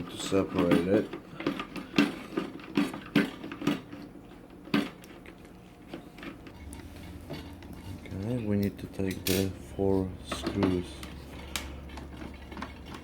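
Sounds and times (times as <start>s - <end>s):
hard parts knocking and clicking: 0.0s - 5.2s, 10.2s - 13.0s.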